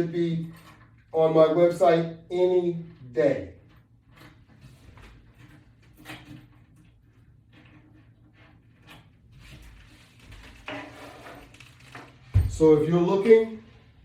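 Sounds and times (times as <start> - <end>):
equipment handling knocks and rustles: 10.4 - 13.4.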